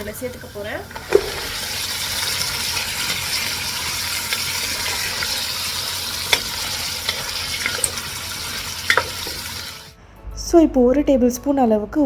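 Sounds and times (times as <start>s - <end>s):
vegetables sizzling in oil: 0.0s - 10.0s.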